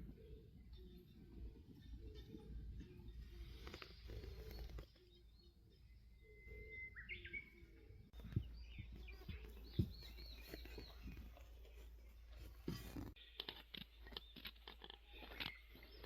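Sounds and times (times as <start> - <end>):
songbird calls: 0.0 - 11.5.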